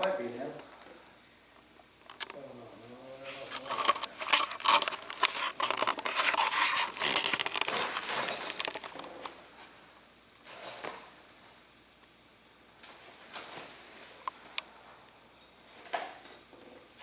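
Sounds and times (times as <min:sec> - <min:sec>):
rustling: 0:02.6 - 0:09.8, 0:12.8 - 0:15.0
metal parts clinking and rattling: 0:03.5 - 0:09.2.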